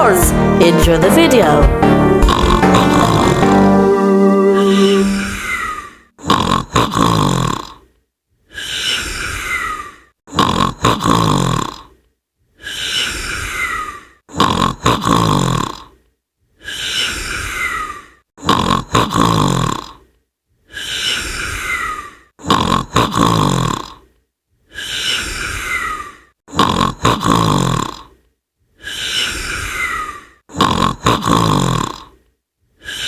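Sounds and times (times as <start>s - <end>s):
loud nasal snoring: 0.0s - 7.8s, 10.3s - 11.9s, 14.3s - 15.9s, 18.4s - 20.0s, 20.8s - 24.0s, 24.8s - 28.2s, 28.8s - 32.2s.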